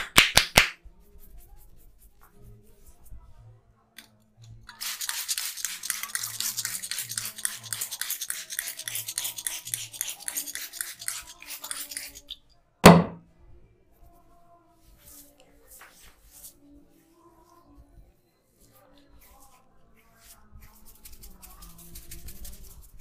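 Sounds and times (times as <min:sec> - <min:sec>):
loud slap: 0:00.0 - 0:00.8, 0:12.8 - 0:13.2
hands rubbing scalp and hair: 0:04.7 - 0:12.4, 0:15.0 - 0:16.6, 0:18.7 - 0:23.0.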